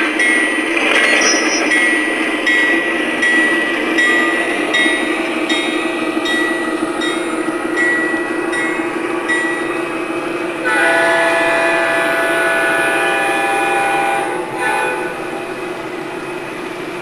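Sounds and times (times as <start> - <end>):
toy train bell ringing: 0.0 - 9.8
train horn blast: 10.6 - 15.4.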